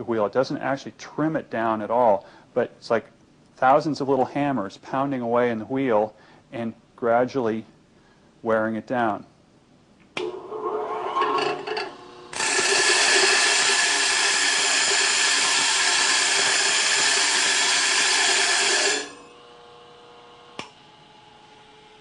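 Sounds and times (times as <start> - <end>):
bench grinder running: 10.2 - 19.7
harsh grinding rasp: 10.4 - 19.3.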